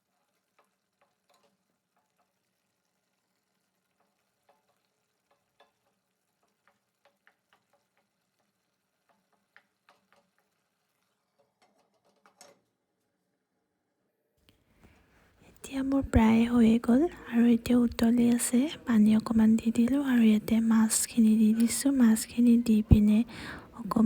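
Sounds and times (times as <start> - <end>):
spatula tapping in frying pan: 4.0 - 10.4.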